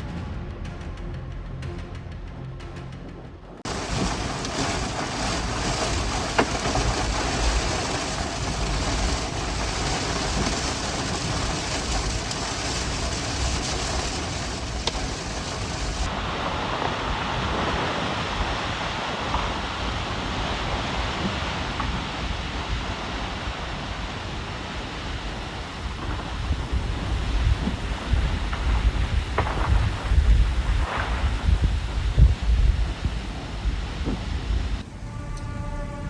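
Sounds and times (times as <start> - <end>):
music: 0.0 - 3.7, 34.8 - 36.0
storm wind buffeting microphone: 3.6 - 35.3.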